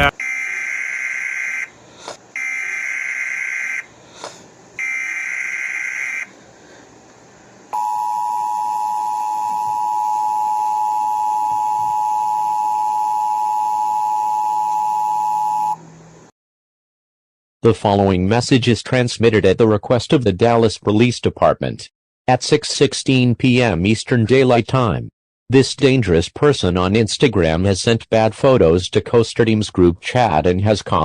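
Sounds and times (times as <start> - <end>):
harsh electronic data bursts: 0.0 - 1.8.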